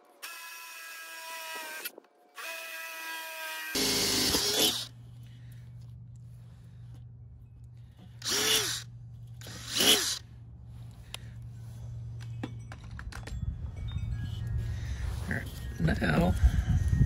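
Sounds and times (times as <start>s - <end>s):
power drill boring through steel: 0.2s - 4.9s, 8.2s - 10.2s
low steady hum: 3.8s - 17.0s.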